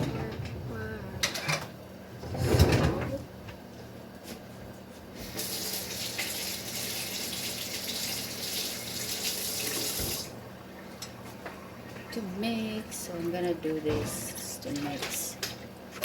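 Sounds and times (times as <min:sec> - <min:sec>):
tap running into sink: 0:09.6 - 0:10.3.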